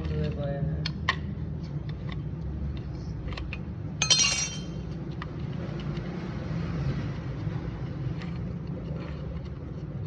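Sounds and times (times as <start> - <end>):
metal parts ticking: 4.0 - 4.8
sharp metallic clink: 4.0 - 4.8.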